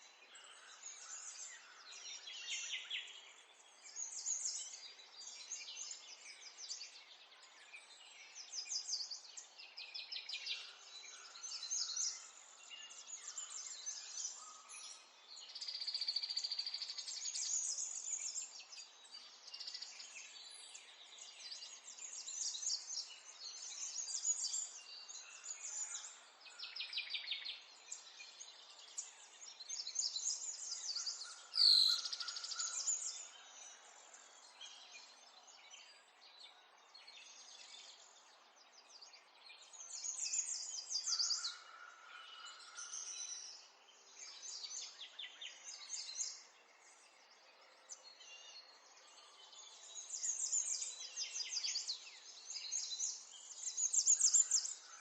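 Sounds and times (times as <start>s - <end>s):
songbirds trilling and chirping: 0.0s - 55.0s.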